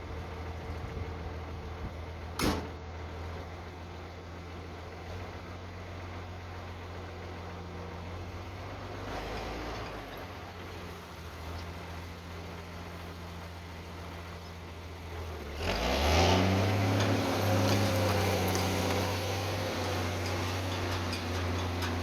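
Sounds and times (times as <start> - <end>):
diesel truck engine revving: 15.0 - 22.0.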